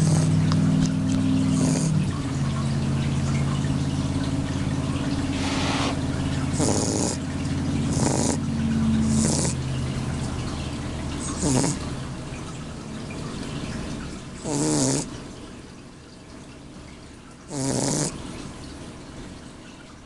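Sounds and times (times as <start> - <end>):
puppy snoring: 0.0 - 2.1, 5.3 - 9.6, 11.2 - 11.9, 14.4 - 15.1, 17.5 - 18.2.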